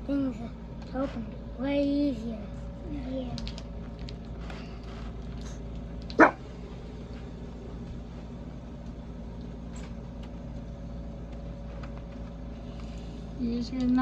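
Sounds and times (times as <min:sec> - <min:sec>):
dog barking: 0:06.1 - 0:06.4.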